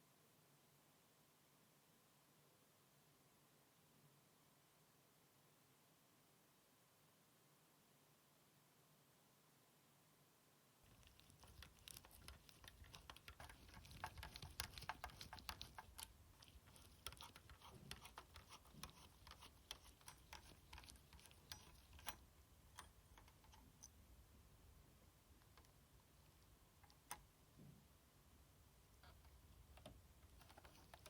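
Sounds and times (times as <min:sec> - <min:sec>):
small tools clicking and tapping: 0:10.9 - 0:24.0, 0:29.0 - 0:31.0.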